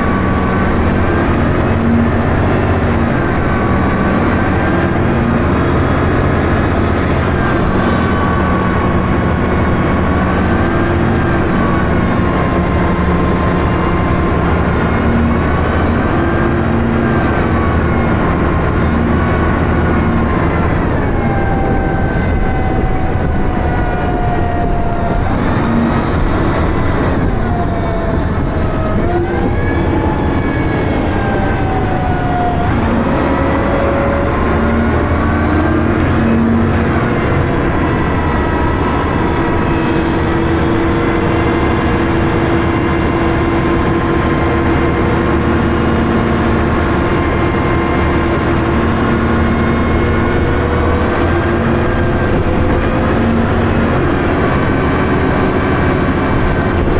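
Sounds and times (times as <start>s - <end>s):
bus engine rumble: 0.0s - 56.9s
engine and gearbox whine: 0.0s - 56.9s.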